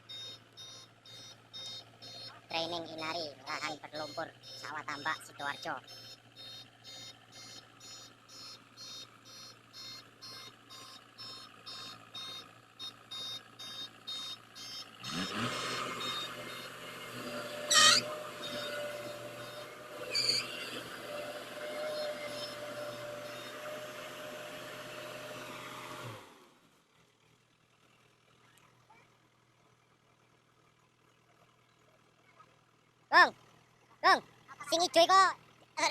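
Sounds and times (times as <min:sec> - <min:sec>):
electronic warning beeper: 0:00.1 - 0:20.7.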